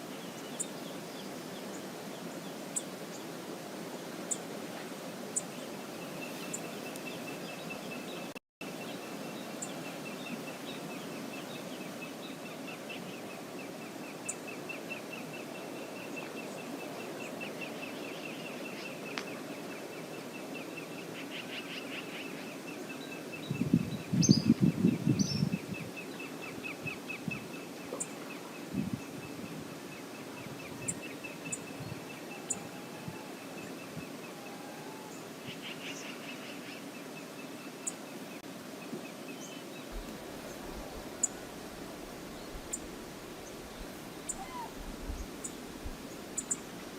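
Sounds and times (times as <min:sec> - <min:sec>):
river rushing: 0:25.9 - 0:46.9.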